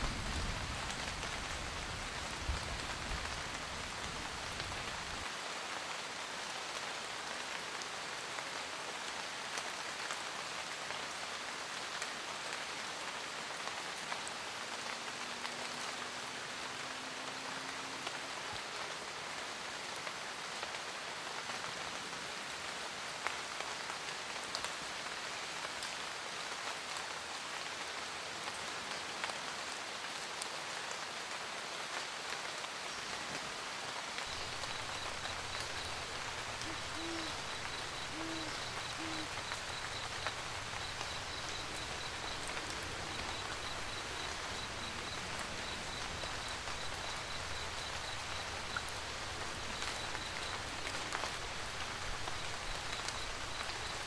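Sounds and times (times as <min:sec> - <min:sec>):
steady rain: 0:00.0 - 0:54.0
owl hooting: 0:34.3 - 0:54.0
raindrops ticking: 0:34.3 - 0:54.0.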